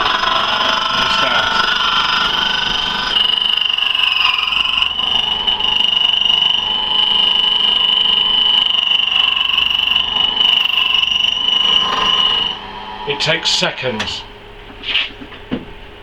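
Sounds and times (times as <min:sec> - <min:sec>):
key-cutting machine whine: 0:00.0 - 0:14.5.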